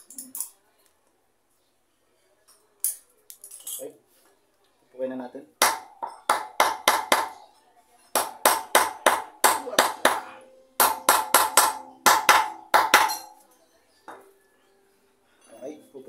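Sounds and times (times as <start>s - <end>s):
hammer striking metal: 5.6s - 7.4s, 8.1s - 13.4s.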